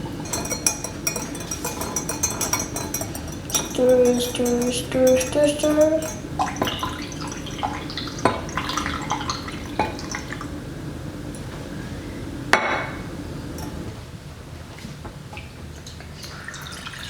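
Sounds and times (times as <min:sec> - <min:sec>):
spoon clinking against dish: 0:00.2 - 0:08.9, 0:13.5 - 0:13.9
spoon stirring liquid: 0:00.2 - 0:10.4, 0:13.5 - 0:13.9.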